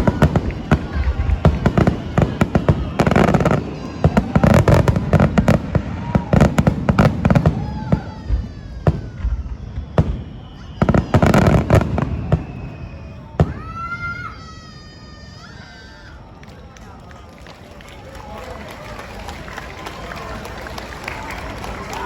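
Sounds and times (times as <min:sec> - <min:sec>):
fireworks booming and crackling: 0:00.0 - 0:14.8.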